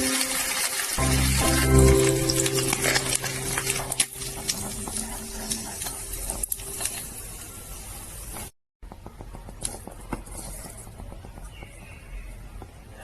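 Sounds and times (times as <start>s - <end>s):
food sizzling: 0.0s - 11.4s
utensil clicking and scraping pan: 2.4s - 7.1s.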